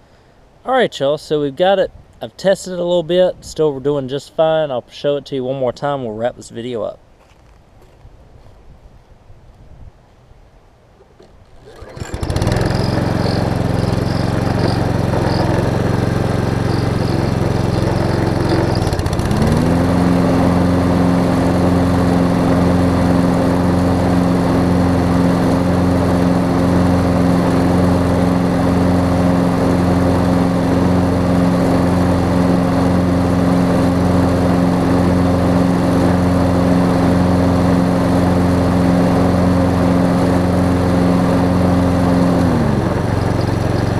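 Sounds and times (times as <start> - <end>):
lawn mower engine running: 11.0 - 43.9.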